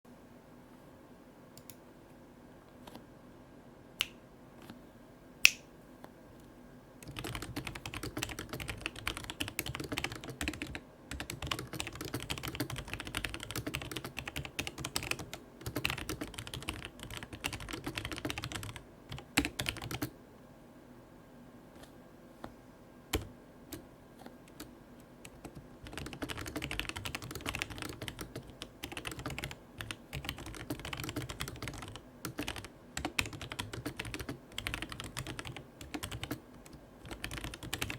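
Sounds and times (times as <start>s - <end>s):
fast typing on mechanical keyboard: 7.0s - 20.1s, 24.5s - 37.9s.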